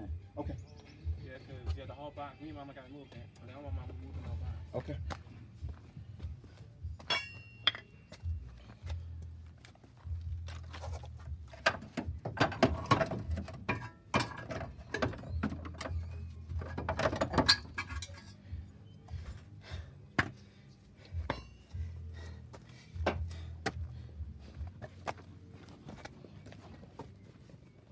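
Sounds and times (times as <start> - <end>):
tools knocking and clinking: 7.0 - 8.3, 11.6 - 18.4, 21.2 - 21.7.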